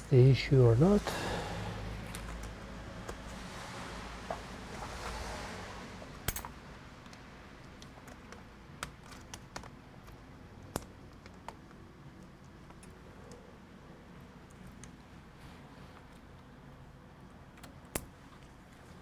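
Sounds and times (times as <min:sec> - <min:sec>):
laptop keys clicking: 0:07.7 - 0:13.4.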